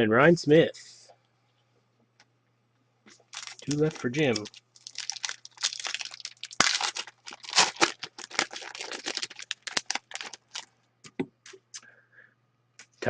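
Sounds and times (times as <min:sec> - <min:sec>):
cards being handled: 0:03.1 - 0:11.8
foil wrapper crinkling and tearing: 0:03.2 - 0:10.7.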